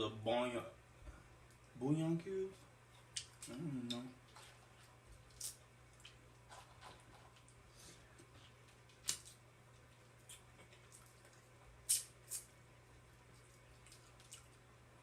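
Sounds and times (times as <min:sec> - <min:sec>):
low steady hum: 0:00.0 - 0:15.0
eating smacks and clicks: 0:08.2 - 0:12.6, 0:13.2 - 0:14.6.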